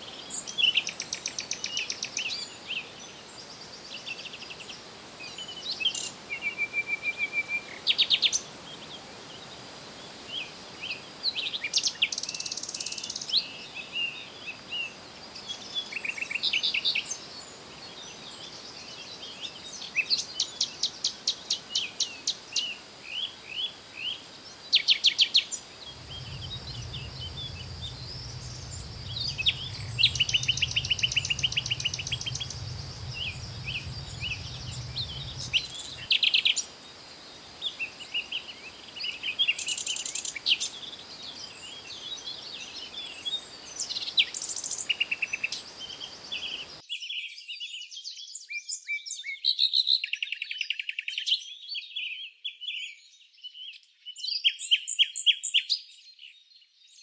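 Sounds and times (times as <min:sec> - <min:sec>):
faint high hiss: 0:00.0 - 0:46.8
songbirds chirping and trilling: 0:00.0 - 0:57.0
low steady hum: 0:25.8 - 0:36.1.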